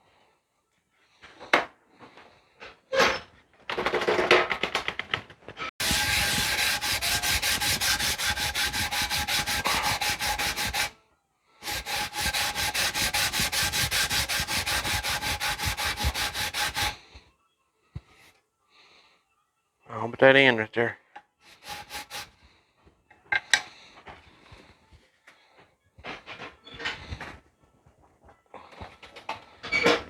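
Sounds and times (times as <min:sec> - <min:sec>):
knife scale rubbed on sandpaper: 0:05.8 - 0:10.9, 0:11.6 - 0:17.0, 0:21.5 - 0:22.3.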